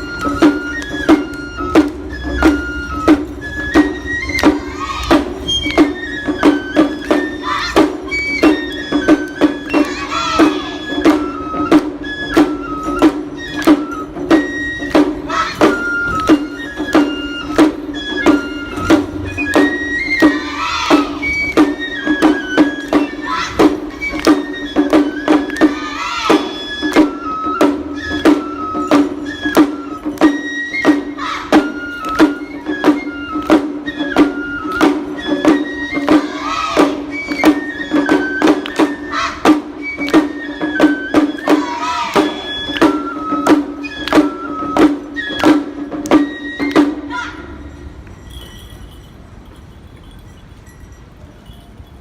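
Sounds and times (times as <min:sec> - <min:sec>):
flute-like melody: 0:00.0 - 0:49.0
drum beat: 0:34.8 - 0:37.0.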